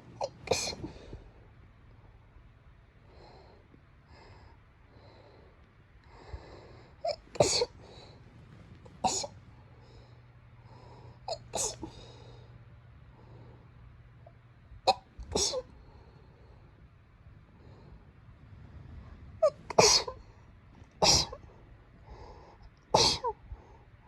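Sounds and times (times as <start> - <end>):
person sneezing: 0.2 - 1.1, 7.1 - 7.8, 11.3 - 12.0, 14.9 - 15.7, 19.4 - 20.2, 21.0 - 21.4, 23.0 - 23.4
breathy inhaling: 3.1 - 13.8.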